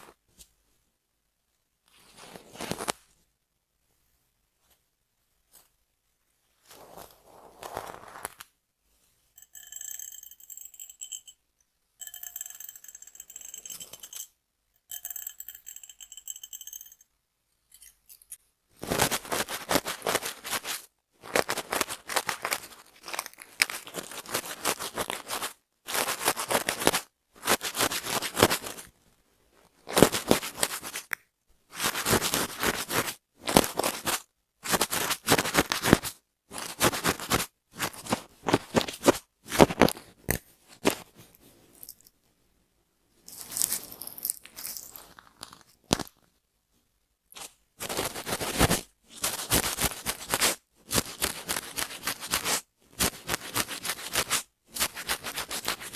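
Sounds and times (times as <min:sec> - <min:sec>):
scratching of hair and scalp: 0:06.6 - 0:08.5, 0:18.8 - 0:28.9, 0:29.9 - 0:40.0, 0:47.4 - 0:55.9.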